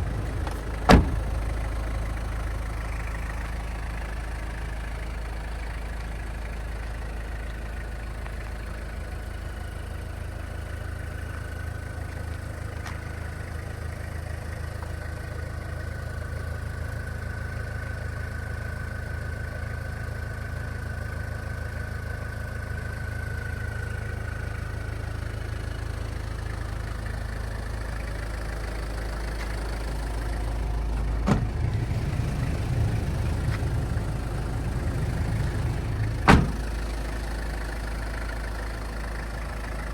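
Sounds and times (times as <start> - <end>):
engine idling: 0.0 - 39.9
sharp thump: 0.4 - 1.3, 31.2 - 31.6, 36.0 - 36.7.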